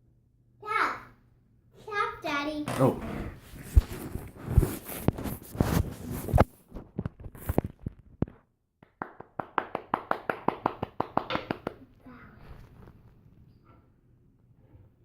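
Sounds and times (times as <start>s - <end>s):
sharp taps and knocks: 8.2s - 11.8s.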